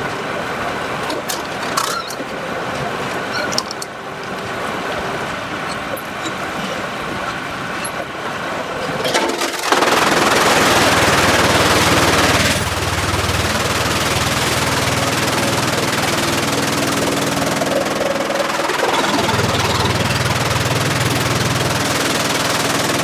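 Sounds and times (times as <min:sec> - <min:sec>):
loud harsh sawmill noise: 0:04.5 - 0:23.0
low motor hum: 0:10.2 - 0:23.0.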